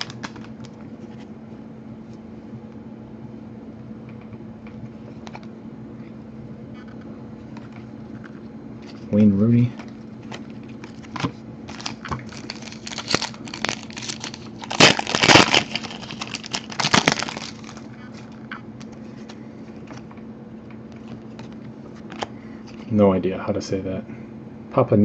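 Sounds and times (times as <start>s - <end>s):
plastic wrappers crinkling: 9.8s - 18.5s.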